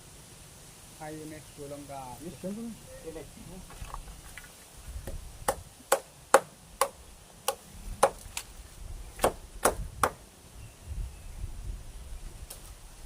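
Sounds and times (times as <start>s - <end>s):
hand tool striking wood: 5.0s - 8.4s, 9.2s - 10.2s.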